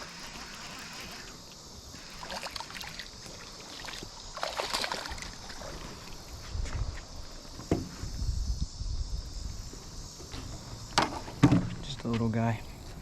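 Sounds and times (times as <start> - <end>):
water splashing: 0.0 - 6.3
insects chorus: 0.0 - 13.0.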